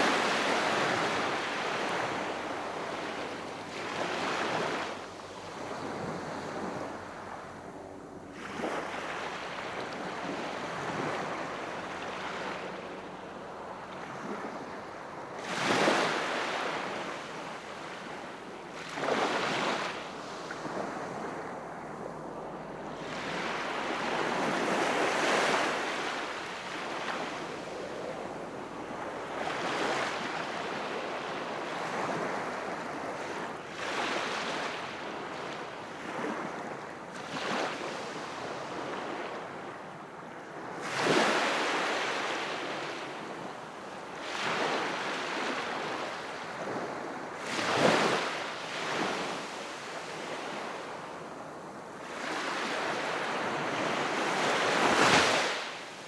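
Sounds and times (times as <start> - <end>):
sea waves breaking on shore: 40.5 - 43.4, 44.0 - 56.0.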